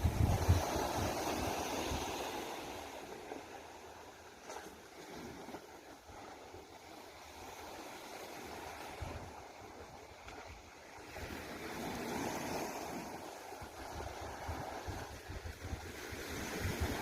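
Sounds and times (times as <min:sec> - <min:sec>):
wind gusting on microphone: 0:00.0 - 0:03.0, 0:11.1 - 0:17.0
sea waves washing ashore: 0:00.0 - 0:17.0.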